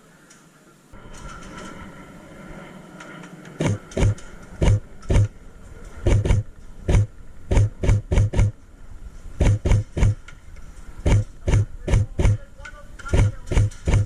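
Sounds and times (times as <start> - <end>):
airsoft gun shots: 6.1 - 8.6, 9.4 - 10.2, 11.0 - 12.4.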